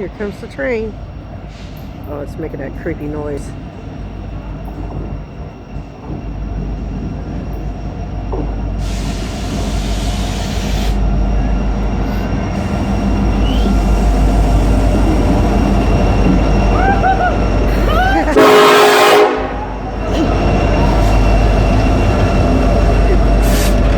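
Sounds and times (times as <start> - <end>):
train rumble: 0.0 - 23.9
eerie knocking: 11.2 - 23.9.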